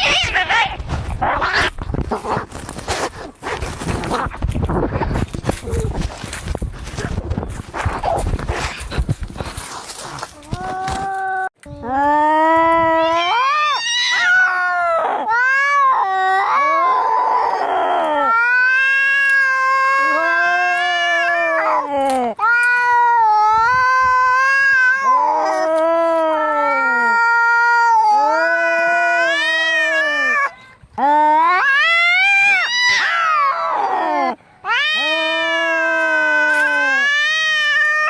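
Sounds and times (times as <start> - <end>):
cats yowling: 0.0 - 1.8, 12.9 - 30.5, 31.1 - 38.0.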